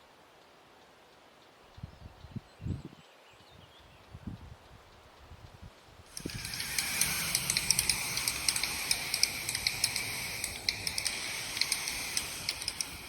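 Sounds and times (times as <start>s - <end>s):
nestlings hissing with ticking clicks: 6.1s - 13.0s.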